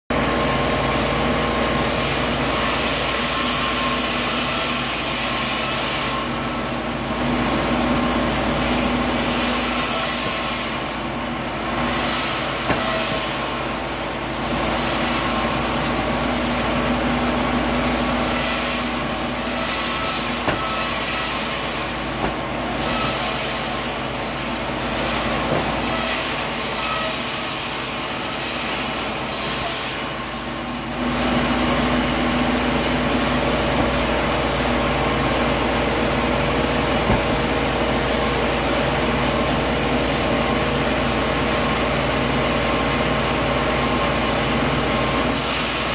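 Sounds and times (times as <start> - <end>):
sawmill machinery running: 0.1 - 45.9
sharp knocks: 37.0 - 37.6.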